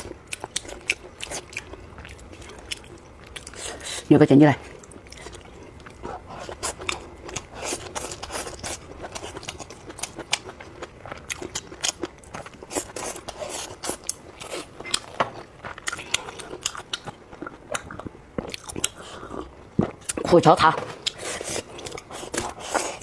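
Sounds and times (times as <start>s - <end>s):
crunchy food chewing: 0.0s - 23.0s.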